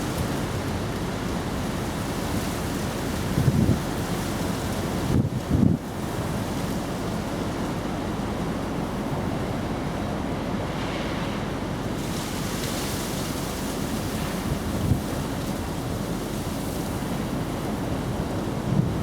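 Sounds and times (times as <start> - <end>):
wind buffeting microphone: 0.0 - 6.2, 13.6 - 19.0.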